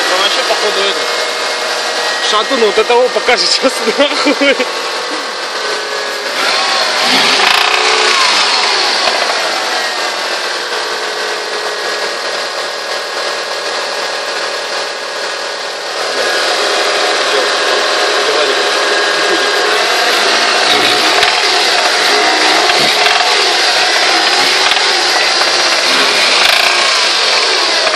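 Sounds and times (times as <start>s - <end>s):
four-cylinder engine running: 0.0s - 27.9s
engine knock: 6.6s - 9.5s, 20.0s - 27.9s.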